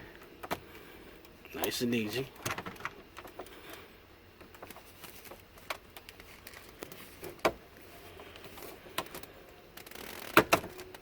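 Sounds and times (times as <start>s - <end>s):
plastic trim clicks and creaks: 9.0s - 11.0s.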